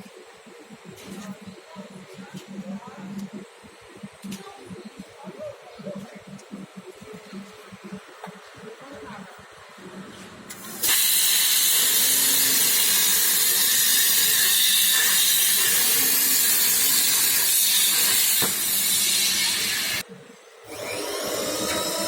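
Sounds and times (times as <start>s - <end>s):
plasma cutter torch hissing: 10.5s - 20.0s.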